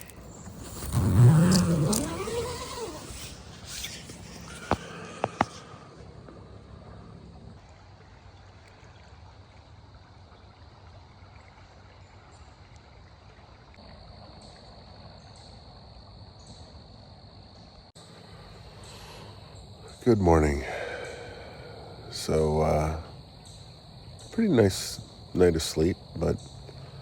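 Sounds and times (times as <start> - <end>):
crickets chirring: 0.0 - 7.6, 13.6 - 27.0.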